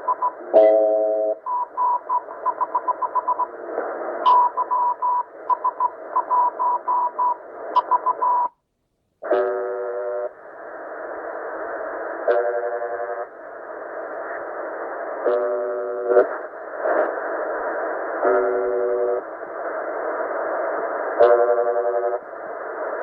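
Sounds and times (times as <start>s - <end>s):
morse code tone: 0.0s - 3.5s, 4.3s - 8.5s, 9.3s - 10.3s, 12.3s - 13.2s, 21.2s - 22.2s
radio hiss: 0.0s - 8.5s, 9.2s - 23.0s
radio static: 0.0s - 8.5s, 9.2s - 23.0s
harsh radio buzz: 9.2s - 23.0s.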